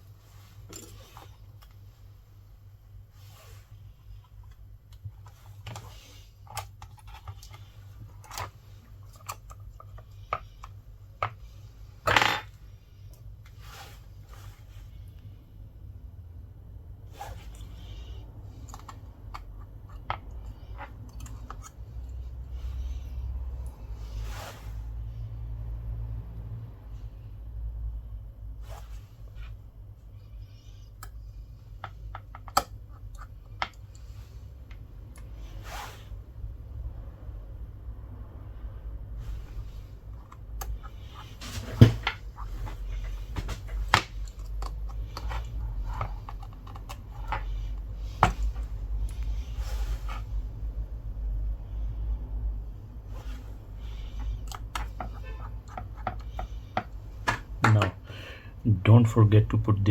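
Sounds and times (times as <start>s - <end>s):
low steady hum: 0.0s - 59.9s
clicks and scrapes of small parts: 0.6s - 1.8s, 3.2s - 13.7s, 17.2s - 23.8s, 30.4s - 35.6s, 39.2s - 50.4s, 53.1s - 57.5s.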